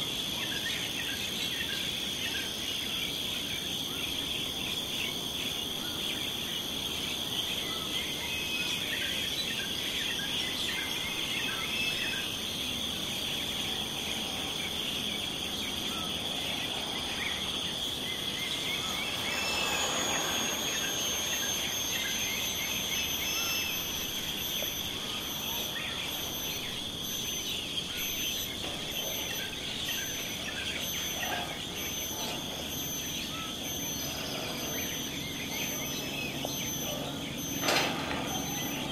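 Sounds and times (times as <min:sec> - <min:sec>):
high insect drone: 0:00.0 - 0:38.9
broad swell of noise: 0:16.2 - 0:26.2.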